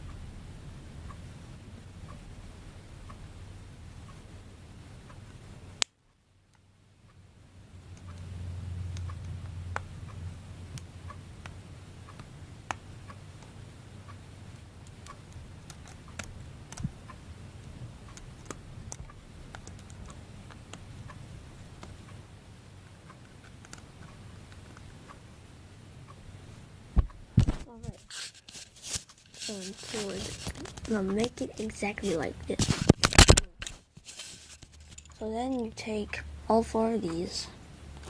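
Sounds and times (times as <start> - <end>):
low steady hum: 0.0 - 38.0
plastic pieces snapping together: 32.6 - 33.8.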